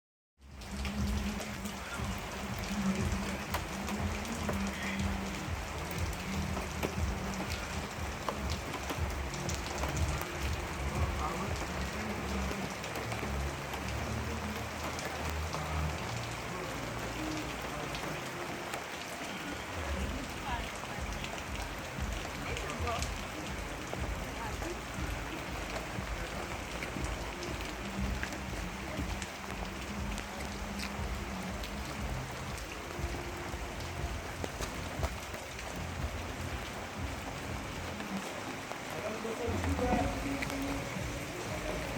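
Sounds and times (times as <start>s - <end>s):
rain pattering: 0.4s - 41.9s.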